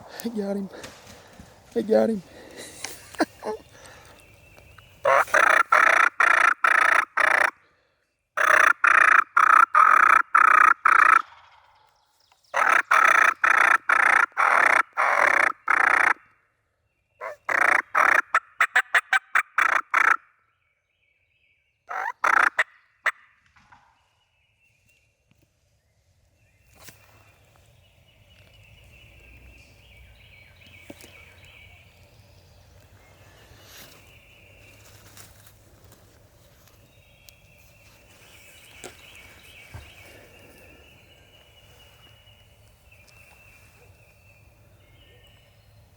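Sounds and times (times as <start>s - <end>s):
turkey yelping: 5.0s - 7.5s, 17.2s - 20.2s, 21.9s - 23.2s.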